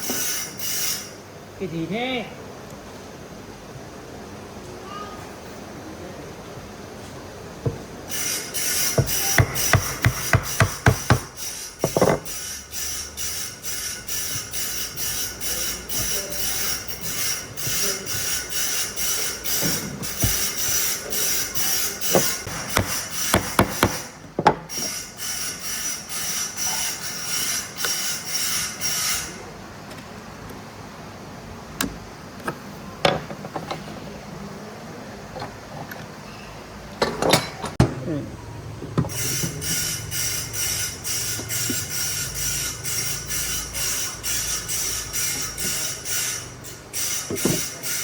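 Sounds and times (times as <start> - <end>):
hand tool strokes with metallic ring: 8.1 - 24.0
hard knocks: 9.0 - 12.3, 22.2 - 24.6.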